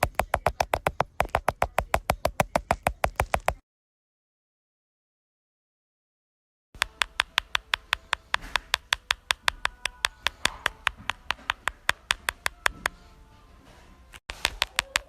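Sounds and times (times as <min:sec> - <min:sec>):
rapid tapping clicks: 0:00.0 - 0:03.6, 0:06.8 - 0:13.0, 0:14.3 - 0:15.0.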